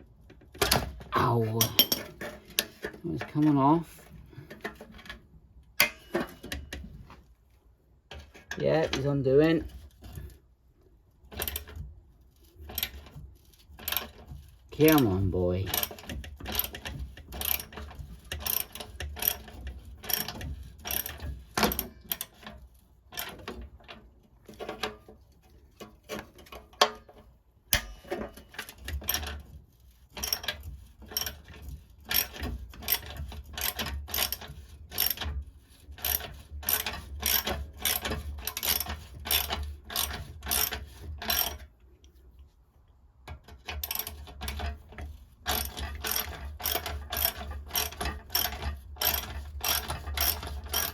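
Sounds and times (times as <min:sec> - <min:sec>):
ratchet wrench clicking: 0:36.0 - 0:41.6, 0:45.5 - 0:50.9.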